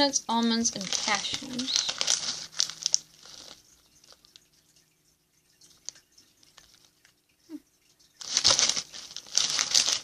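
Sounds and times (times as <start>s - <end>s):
snack bag crinkling: 0.7s - 4.4s, 8.2s - 10.0s.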